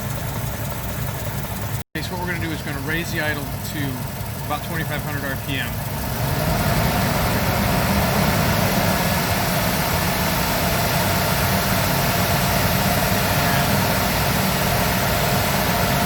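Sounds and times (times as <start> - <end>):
misfiring engine at raised speed: 0.0 - 16.0.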